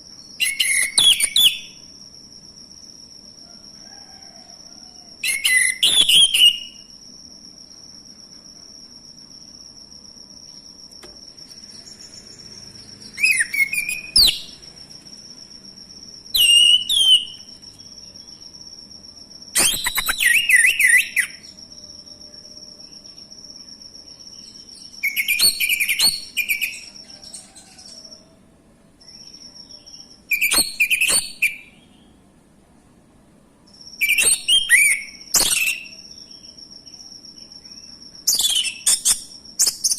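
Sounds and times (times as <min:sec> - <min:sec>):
thrush singing whistled notes: 0:00.3 - 0:01.9, 0:05.2 - 0:06.9, 0:11.5 - 0:14.6, 0:16.3 - 0:17.8, 0:19.6 - 0:21.6.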